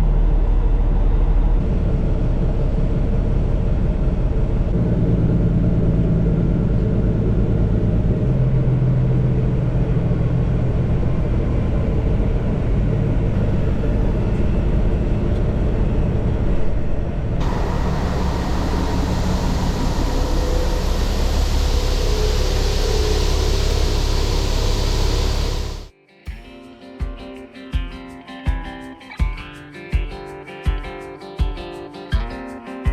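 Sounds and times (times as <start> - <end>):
vehicle engine droning: 0.0 - 25.9
road and wind noise hiss: 9.5 - 25.9.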